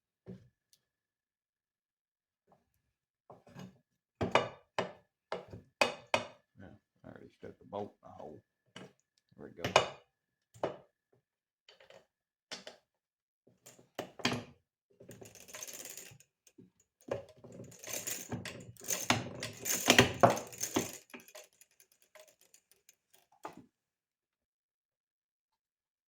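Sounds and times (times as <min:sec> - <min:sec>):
metal parts and tools clinking: 0:15.1 - 0:16.2, 0:17.6 - 0:23.3.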